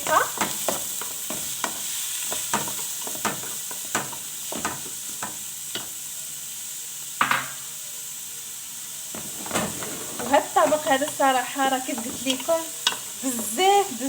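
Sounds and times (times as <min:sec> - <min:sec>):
onion sizzling in oil: 0:00.0 - 0:14.0
utensil scraping and knocking pan: 0:09.2 - 0:11.2, 0:11.9 - 0:13.0.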